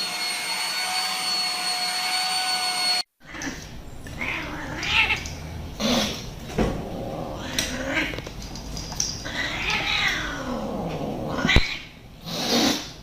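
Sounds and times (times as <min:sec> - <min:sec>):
cat meowing: 0:03.2 - 0:08.3, 0:09.2 - 0:12.0.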